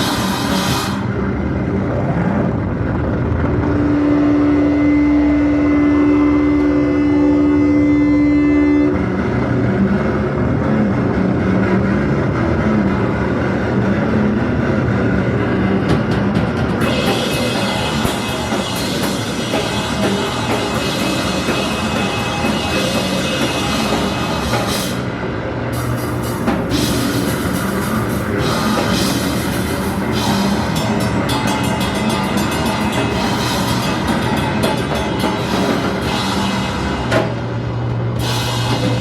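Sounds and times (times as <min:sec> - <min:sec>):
crashing cymbals: 0:00.0 - 0:01.1, 0:16.8 - 0:39.0
live heavy rock band: 0:00.0 - 0:01.3, 0:14.9 - 0:39.0.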